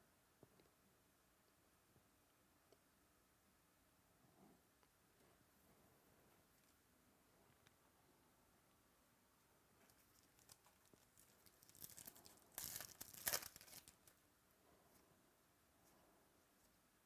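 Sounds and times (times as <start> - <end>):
wrapper rustling and tearing: 9.9 - 14.2.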